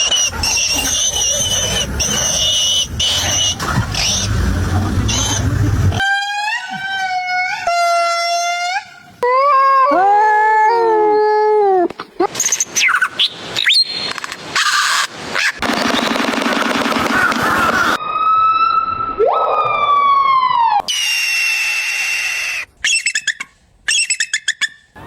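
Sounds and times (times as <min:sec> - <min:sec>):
dog calls sweeping up and down: 0:22.8 - 0:24.8.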